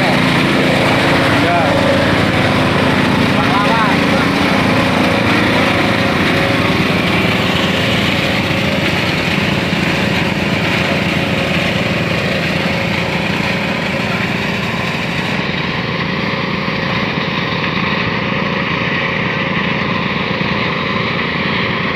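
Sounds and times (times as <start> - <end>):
small engine running: 0.0 - 21.9.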